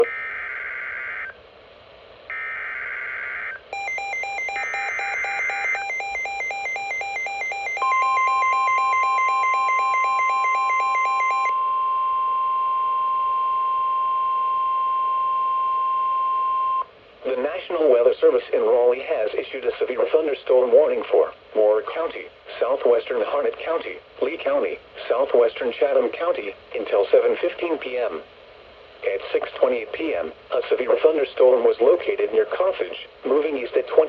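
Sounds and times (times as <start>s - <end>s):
steady single-pitch alert tone: 3.8s - 15.3s.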